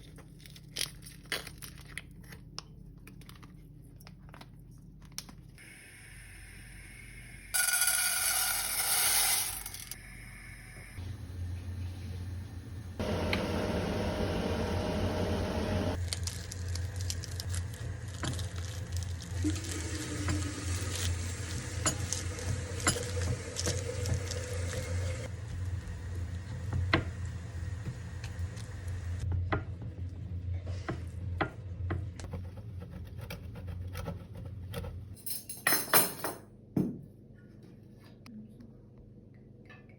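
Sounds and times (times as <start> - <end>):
steady low hum: 9.5 - 23.8.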